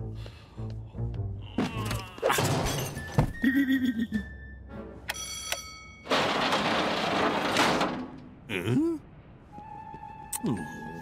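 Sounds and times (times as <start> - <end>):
music: 0.0 - 5.9, 9.5 - 11.0.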